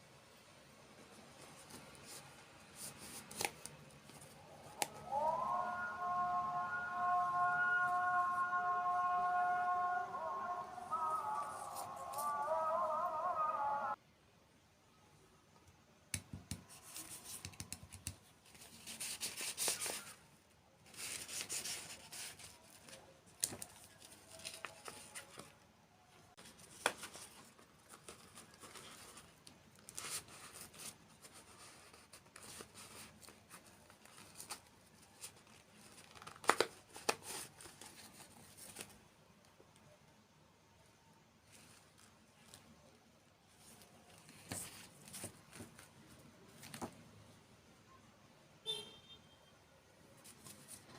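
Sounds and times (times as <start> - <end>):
packaging crinkling and tearing: 32.4 - 39.0.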